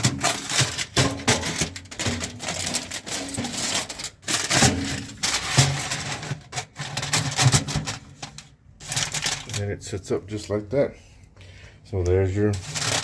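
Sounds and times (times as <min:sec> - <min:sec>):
aluminium foil crinkling: 0:00.0 - 0:09.7, 0:12.3 - 0:13.0.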